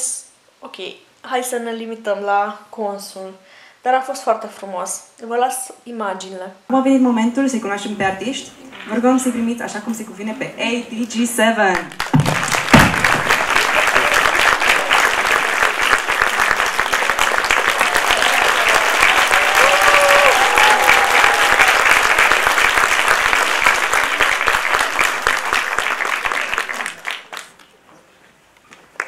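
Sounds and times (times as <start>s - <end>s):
audience applauding: 11.8s - 27.7s, 28.7s - 29.0s
faint voice or cheer: 17.9s - 21.8s.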